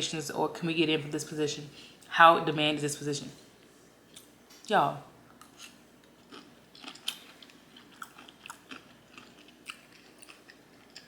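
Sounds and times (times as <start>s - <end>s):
chewing mouth clicks and smacks: 5.4s - 11.0s.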